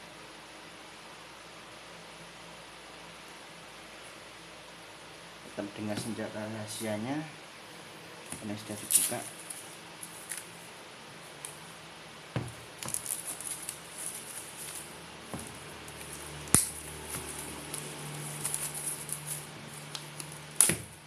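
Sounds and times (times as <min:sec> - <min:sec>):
packaging rustling and crinkling: 0:08.4 - 0:10.6, 0:12.4 - 0:21.0.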